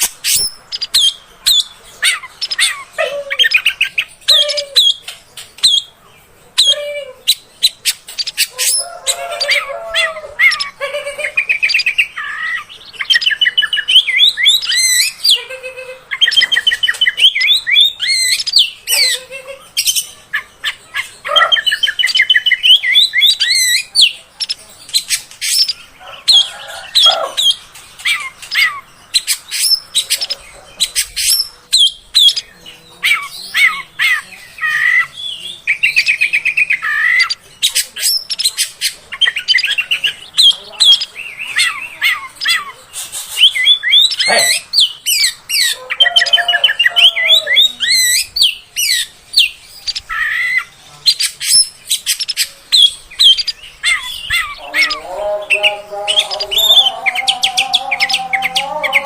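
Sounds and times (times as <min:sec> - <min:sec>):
bird singing whistles and trills: 0:10.4 - 0:15.5, 0:16.1 - 0:25.8, 0:33.1 - 0:59.0.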